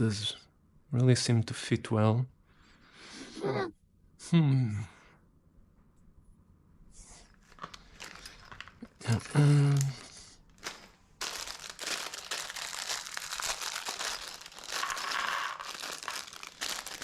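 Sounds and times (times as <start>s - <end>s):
plastic packaging crinkling: 7.4s - 17.0s.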